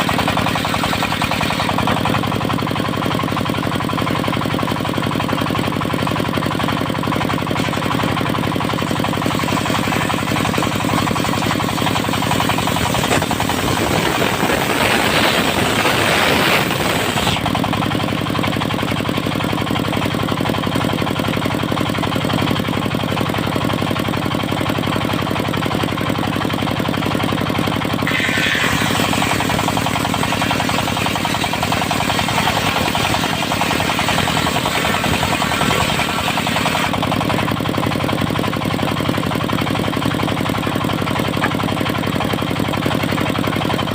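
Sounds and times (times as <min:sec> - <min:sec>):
diesel engine with knocking beat: 0:00.0 - 0:43.9
saw blade rushing hiss: 0:09.2 - 0:17.5, 0:28.0 - 0:36.9.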